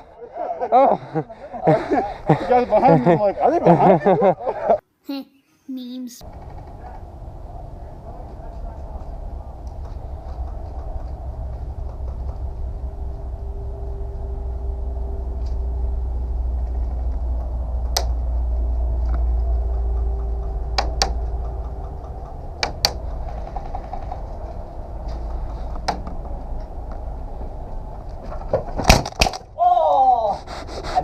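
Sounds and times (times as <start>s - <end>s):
wind rumble: 6.2s - 31.0s.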